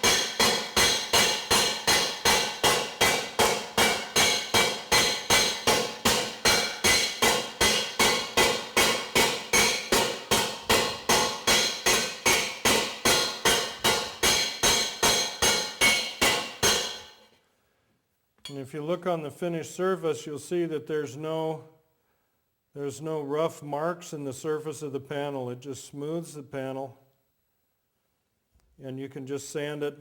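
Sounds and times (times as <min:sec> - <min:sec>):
steel slapper striking steel panel: 0:00.0 - 0:17.2.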